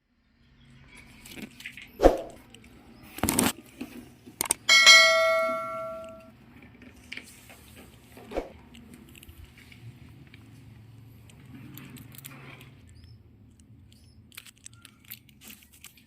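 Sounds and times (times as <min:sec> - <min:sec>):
metal object struck and ringing: 0:04.7 - 0:06.3.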